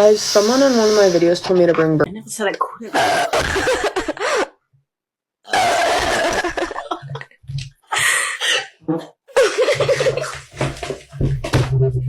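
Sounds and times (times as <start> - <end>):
woman burping: 2.8 - 4.5, 5.5 - 7.3
cough-like burst: 2.9 - 4.6, 5.5 - 6.9, 8.4 - 10.3.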